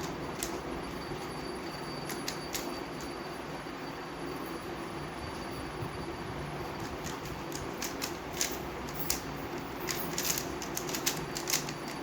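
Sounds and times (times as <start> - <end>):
steady low hum: 0.0 - 12.0
puzzle cube layers clicking: 10.1 - 12.0.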